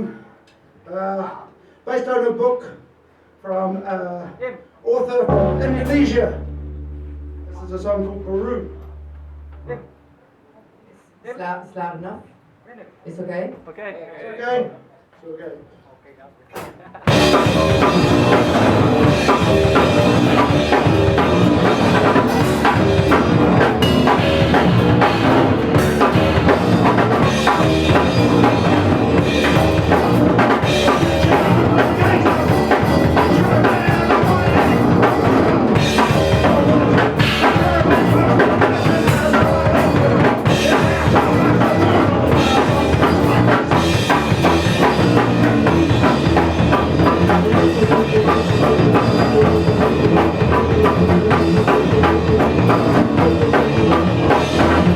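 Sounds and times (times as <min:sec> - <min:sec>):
punk band playing live: 0:05.3 - 0:10.0, 0:16.6 - 0:54.9
driving bass guitar: 0:05.3 - 0:10.2, 0:17.1 - 0:54.9
fast drum kit: 0:16.6 - 0:54.9.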